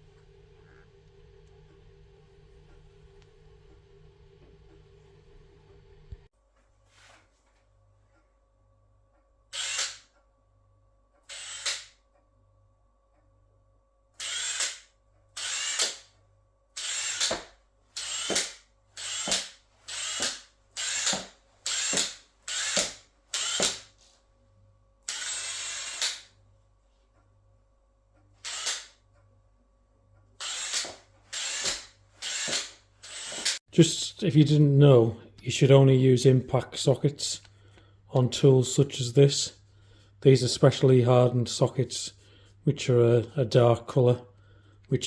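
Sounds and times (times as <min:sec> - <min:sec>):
impact wrench bursts: 0:09.5 - 0:10.1, 0:11.3 - 0:11.9, 0:14.2 - 0:16.1, 0:16.8 - 0:23.9, 0:25.1 - 0:26.3, 0:28.4 - 0:29.0, 0:30.4 - 0:33.6.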